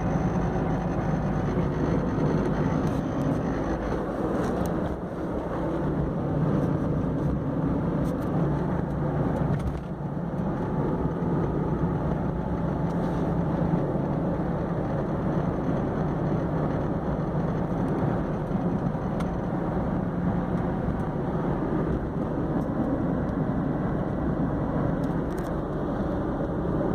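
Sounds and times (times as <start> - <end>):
grinding squeaking whir: 0.0 - 7.0
car engine and road noise: 0.0 - 26.9.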